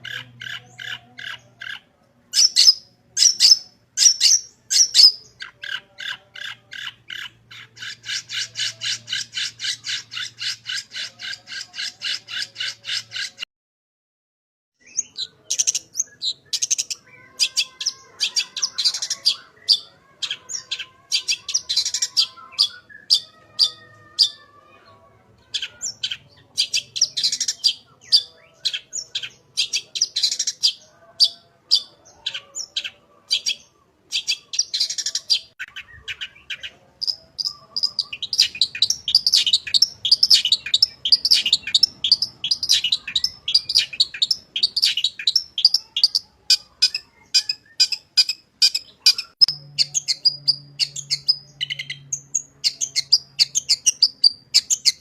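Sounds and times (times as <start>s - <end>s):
shrike singing sharp chirps: 33.4s - 55.0s.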